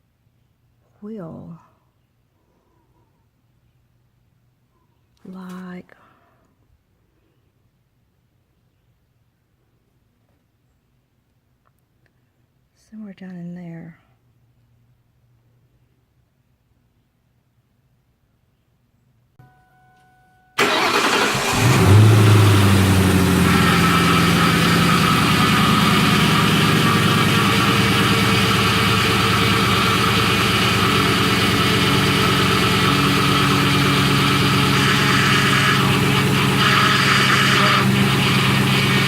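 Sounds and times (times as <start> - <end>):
car engine revving and idling: 20.6 - 39.0
car engine starter cranking: 20.6 - 39.0.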